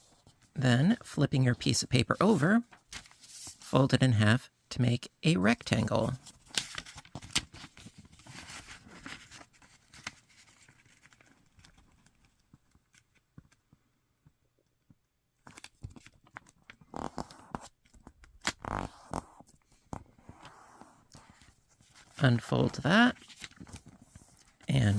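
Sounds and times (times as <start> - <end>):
paper rustling as folded: 2.1 - 3.7, 6.0 - 13.6, 15.4 - 19.2, 20.2 - 24.9.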